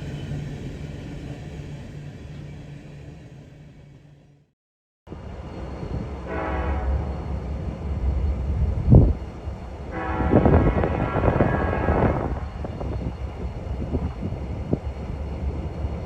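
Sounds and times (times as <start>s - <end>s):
low rumble of locomotive engine: 0.0s - 4.5s, 5.1s - 16.0s
locomotive horn blasts: 6.2s - 7.1s, 9.9s - 12.7s.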